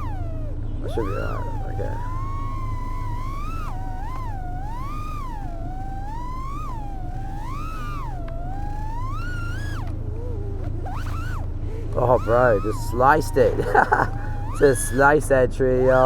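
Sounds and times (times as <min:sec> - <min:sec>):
drone motors whining: 0:00.0 - 0:16.0.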